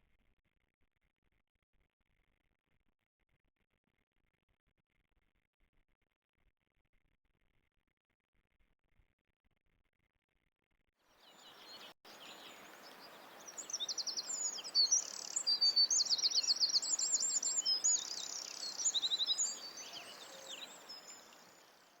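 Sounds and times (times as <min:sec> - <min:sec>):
small birds chirping: 0:11.2 - 0:22.0
steady background hiss: 0:11.4 - 0:22.0.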